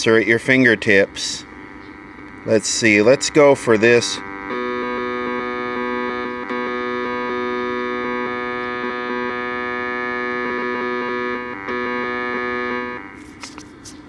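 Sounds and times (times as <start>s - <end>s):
buzzing tone from speaker: 0.0s - 13.8s
faint clicks: 1.4s - 2.5s.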